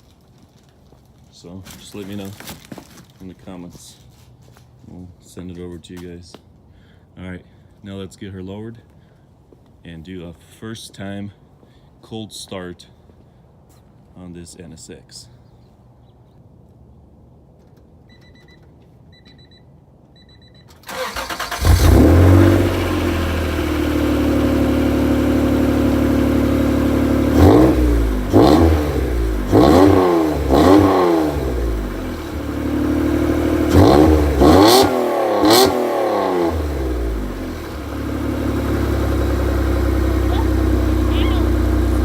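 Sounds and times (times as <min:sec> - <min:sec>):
short electronic beeps: 0:18.1 - 0:20.8
car engine starting and idling: 0:20.7 - 0:42.0
engine revving: 0:20.9 - 0:42.0.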